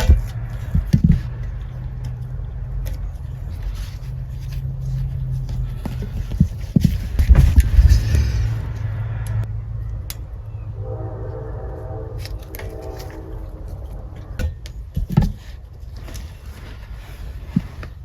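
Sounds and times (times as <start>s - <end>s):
steady low hum: 0.0s - 18.0s
steady pitched tone: 8.5s - 15.0s.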